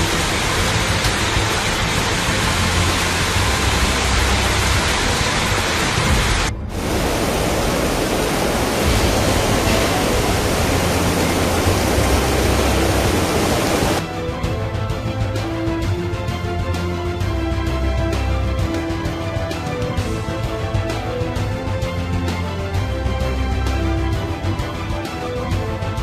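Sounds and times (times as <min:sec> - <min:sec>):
torrential rain pouring: 0:00.0 - 0:14.0.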